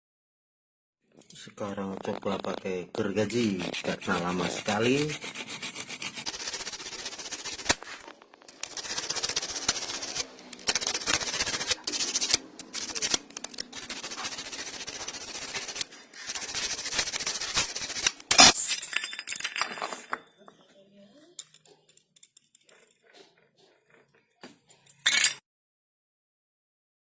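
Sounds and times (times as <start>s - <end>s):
hacksaw cutting metal: 3.0s - 18.5s.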